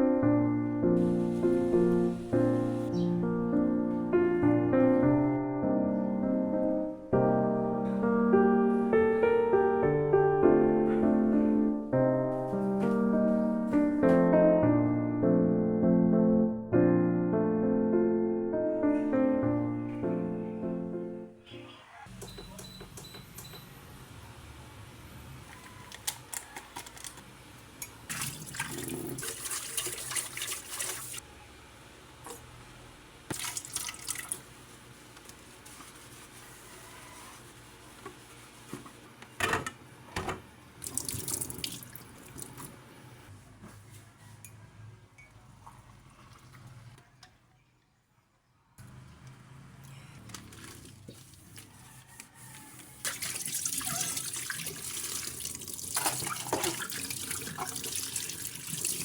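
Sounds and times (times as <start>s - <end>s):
tap water running into sink: 28.1s - 31.2s, 33.3s - 34.5s, 40.8s - 42.7s, 53.0s - 59.0s.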